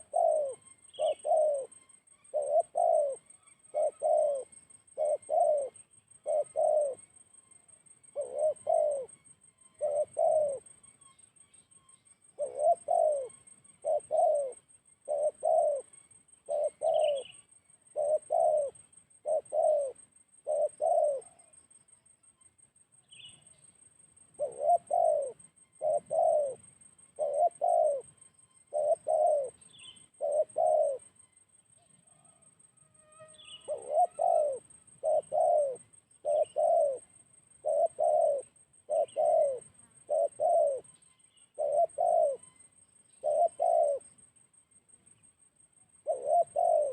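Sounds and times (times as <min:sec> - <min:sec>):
dove cooing: 0:00.0 - 0:07.2, 0:08.0 - 0:09.1, 0:09.8 - 0:10.7, 0:12.4 - 0:21.6, 0:24.4 - 0:31.1, 0:33.4 - 0:44.2, 0:46.0 - 0:46.9
faint small bird chirps: 0:00.0 - 0:46.9.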